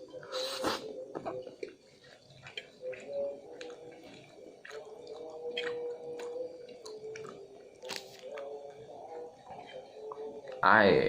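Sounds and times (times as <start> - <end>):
person chewing noodles: 0.0 - 10.7
wet mouth clicks and smacks: 2.4 - 8.5.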